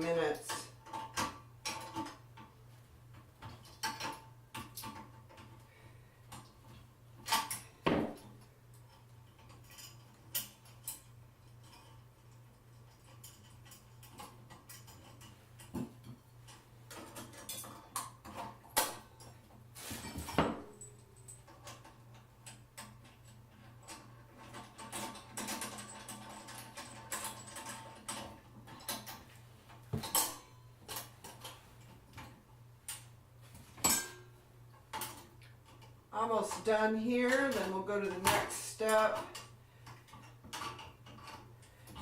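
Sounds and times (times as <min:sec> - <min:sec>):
metal clicks and clinks: 0:20.7 - 0:29.2.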